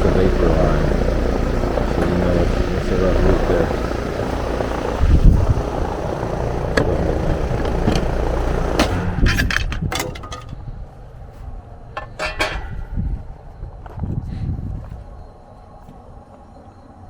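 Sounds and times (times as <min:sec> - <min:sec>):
heat pump droning: 0:00.0 - 0:16.2
sharp clicks and knocks: 0:05.7 - 0:10.6, 0:12.0 - 0:12.8.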